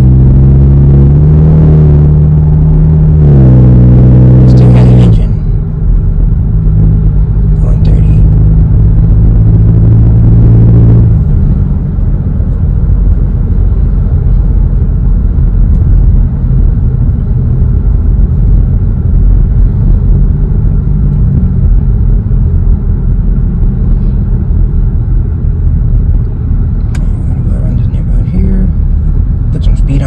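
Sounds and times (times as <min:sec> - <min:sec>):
car exhaust low rumble: 0:00.0 - 0:30.0
road noise: 0:00.0 - 0:30.0.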